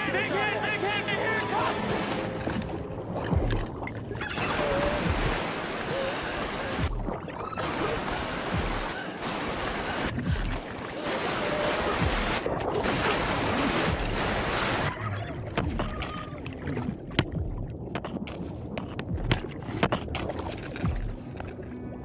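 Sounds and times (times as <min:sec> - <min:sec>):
whitewater rushing and splashing: 0:00.0 - 0:03.8, 0:04.4 - 0:15.0
sharp splashes and knocks: 0:01.7 - 0:04.0, 0:10.1 - 0:14.9, 0:15.5 - 0:21.6.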